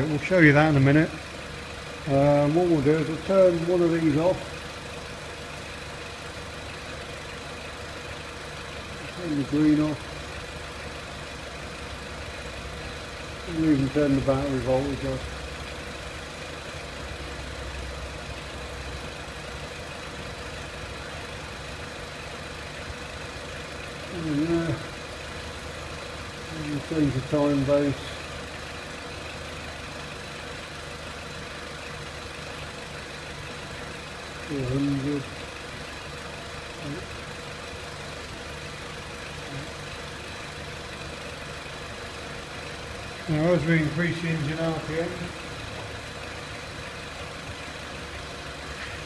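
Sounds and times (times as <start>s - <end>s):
car engine idling: 0.0s - 49.0s.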